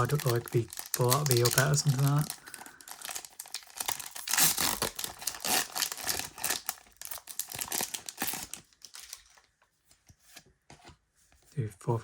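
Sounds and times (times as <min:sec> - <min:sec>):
foil wrapper crinkling: 0:00.0 - 0:09.5.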